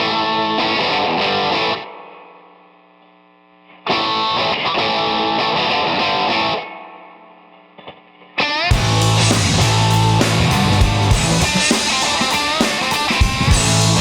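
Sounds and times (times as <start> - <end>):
distorted electric guitar riff: 0.0 - 2.2, 3.8 - 7.2, 7.8 - 14.0.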